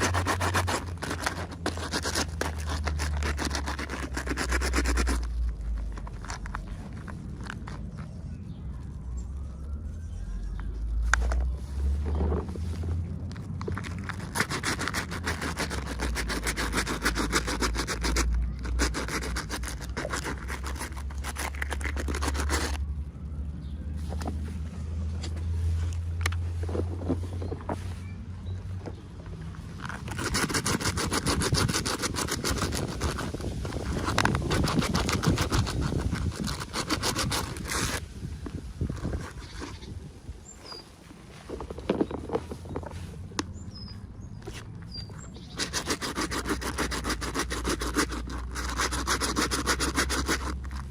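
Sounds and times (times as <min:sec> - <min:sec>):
toy packaging crinkling: 0:00.0 - 0:08.0, 0:13.3 - 0:16.9
packaging crackling and scraping: 0:00.0 - 0:23.0, 0:29.4 - 0:43.4, 0:44.4 - 0:50.9.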